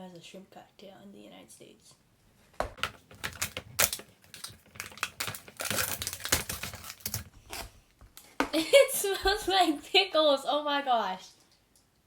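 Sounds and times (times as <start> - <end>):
foil seal crinkling and tearing: 2.9 - 7.7.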